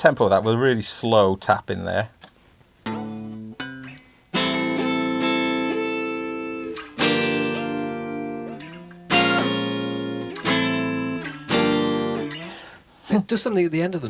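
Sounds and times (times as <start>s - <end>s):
flanged guitar chords ringing: 2.9s - 12.6s.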